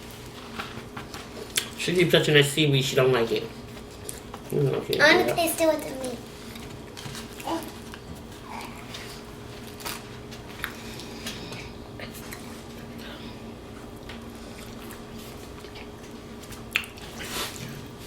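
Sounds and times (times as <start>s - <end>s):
steady low hum: 0.0s - 18.0s
chewing and mouth noises: 6.4s - 13.0s, 13.7s - 17.8s.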